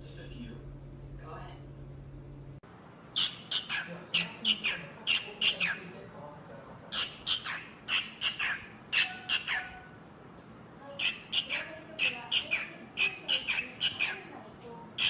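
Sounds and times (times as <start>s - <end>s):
parrot squawking: 3.1s - 6.0s, 6.9s - 10.0s, 11.0s - 14.4s.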